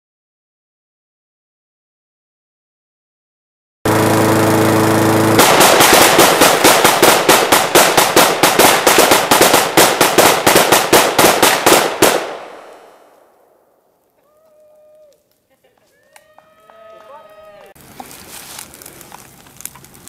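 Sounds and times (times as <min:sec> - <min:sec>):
lawn mower engine running: 0:03.9 - 0:10.9
rapid rifle shots: 0:05.4 - 0:12.8.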